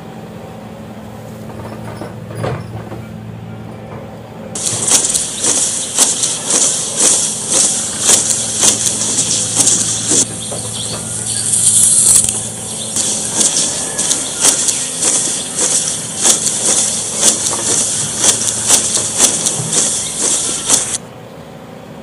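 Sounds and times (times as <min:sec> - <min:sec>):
engine idling: 0:00.7 - 0:21.2
loud high hiss: 0:04.6 - 0:21.0
sharp clicks: 0:04.6 - 0:21.0.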